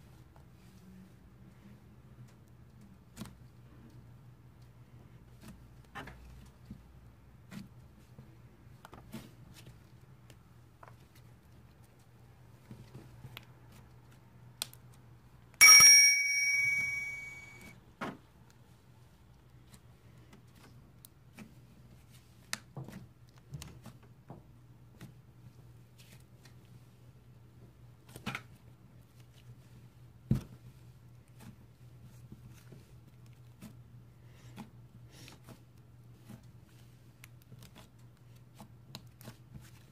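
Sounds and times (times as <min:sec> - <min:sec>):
sharp bell-like ding: 0:15.6 - 0:17.7.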